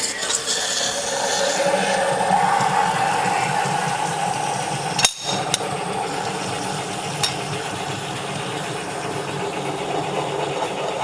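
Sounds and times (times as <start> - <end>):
coffee maker hissing and bubbling: 0.0 - 11.0.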